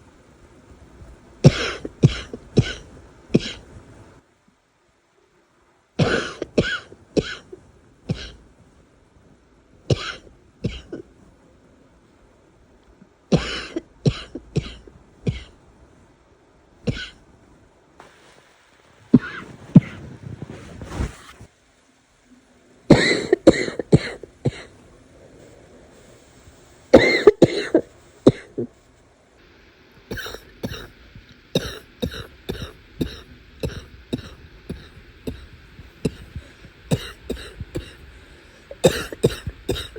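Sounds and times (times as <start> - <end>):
person coughing: 1.5 - 3.7, 6.0 - 7.5, 8.1 - 8.4, 9.9 - 11.0, 13.4 - 15.6, 19.2 - 20.1, 22.9 - 24.7, 27.0 - 28.7, 30.1 - 31.0, 31.6 - 39.9.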